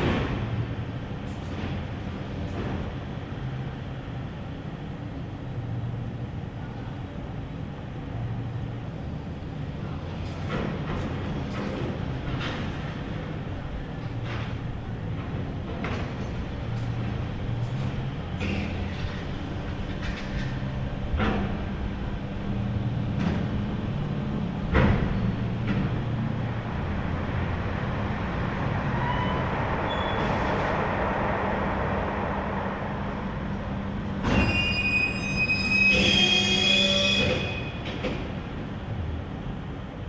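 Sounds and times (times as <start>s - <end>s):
creaking and screeching: 34.2s - 37.8s.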